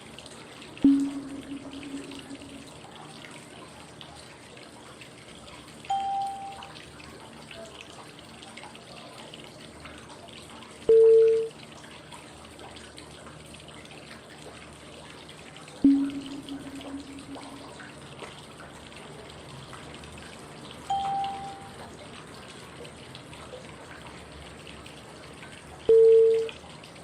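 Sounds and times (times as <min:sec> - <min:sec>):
flowing water white noise: 0:05.9 - 0:06.6, 0:20.9 - 0:22.0
short cue tones: 0:15.8 - 0:17.8, 0:20.9 - 0:21.8.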